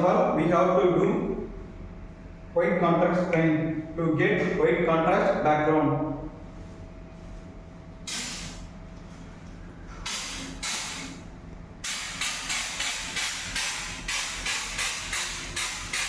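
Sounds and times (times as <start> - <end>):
aerosol can spraying: 8.1 - 8.6.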